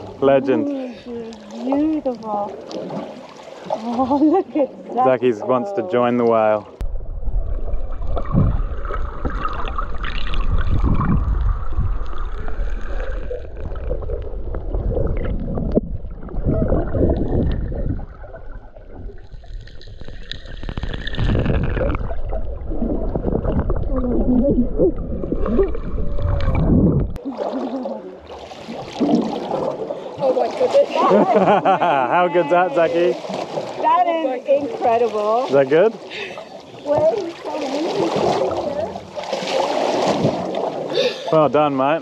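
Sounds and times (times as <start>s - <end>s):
water gurgling underwater: 6.2s - 32.0s, 33.1s - 41.0s
low rumble: 6.8s - 27.2s.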